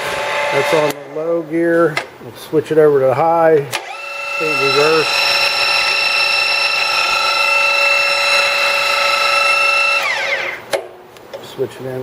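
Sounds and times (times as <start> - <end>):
drill press whining: 3.7 - 10.8.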